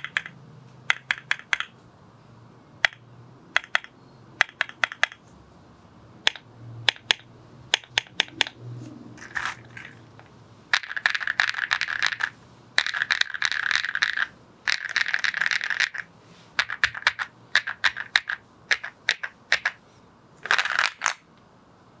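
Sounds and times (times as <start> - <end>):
mechanical keyboard key clacks: 0.0 - 1.7, 2.8 - 5.2.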